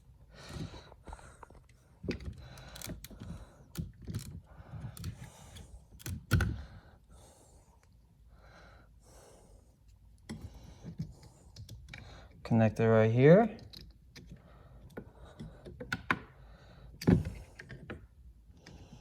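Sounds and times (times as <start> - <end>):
rustling of handled parts: 0.6 - 6.6
plastic trim clicks: 4.9 - 6.6.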